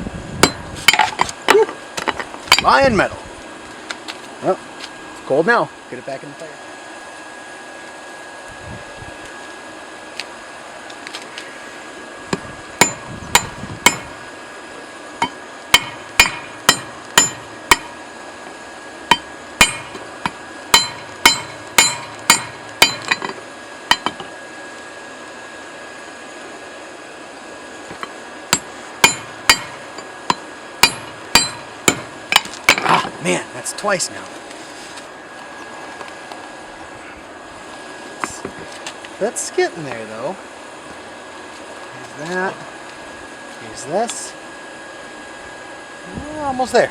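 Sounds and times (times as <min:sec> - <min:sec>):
steady hum: 0:00.0 - 0:46.9
hammer ringing on hot steel: 0:00.4 - 0:01.0, 0:12.8 - 0:14.2, 0:15.2 - 0:18.0, 0:19.1 - 0:24.3, 0:27.9 - 0:33.0.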